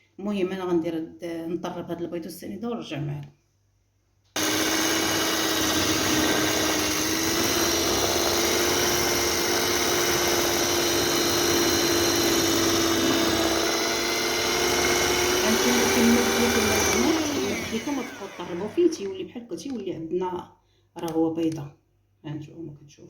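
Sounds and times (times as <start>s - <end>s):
electric mixer motor whining: 4.4s - 19.2s.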